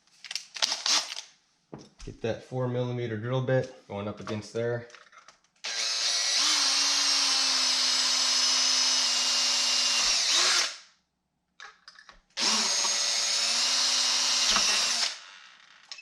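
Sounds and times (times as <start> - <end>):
electric drill running: 5.6 - 10.9, 12.4 - 15.9.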